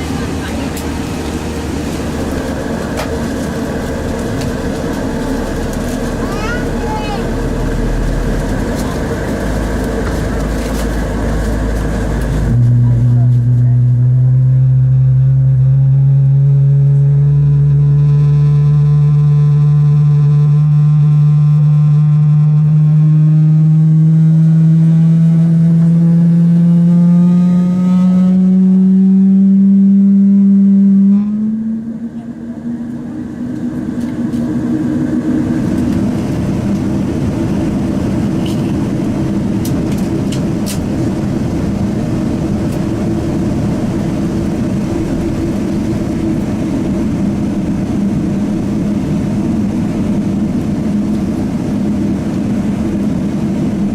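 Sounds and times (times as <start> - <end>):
rushing roar: 0.0 - 18.0
jet engine hum: 0.0 - 18.4, 31.0 - 53.9.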